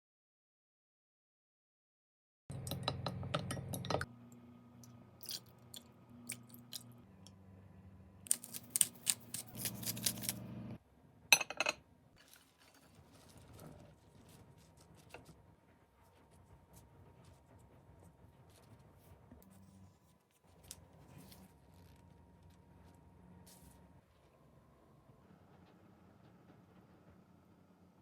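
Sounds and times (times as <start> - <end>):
vegetables crunching: 5.2 - 6.9, 8.3 - 10.4.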